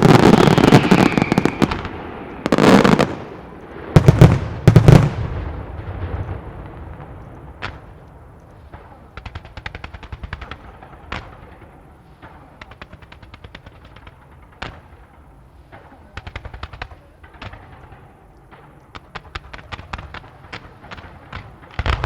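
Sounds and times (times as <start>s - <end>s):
firework shell bursts: 0.0s - 3.4s
rapid small firework pops: 0.0s - 22.0s.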